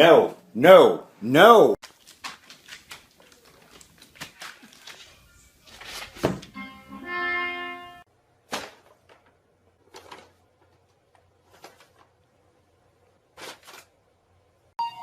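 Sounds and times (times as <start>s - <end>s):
held tone: 14.8s - 15.0s.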